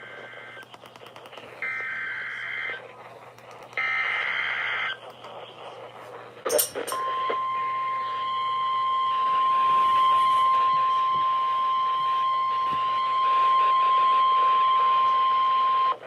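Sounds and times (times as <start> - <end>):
static clicks: 0.2 - 1.6, 2.7 - 7.0
steady attention tone: 6.5 - 15.9.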